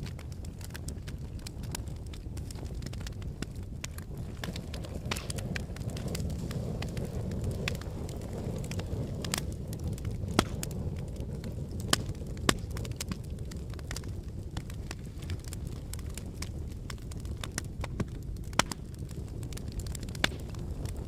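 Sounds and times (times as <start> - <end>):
sharp cracks and pops: 0.0 - 21.0.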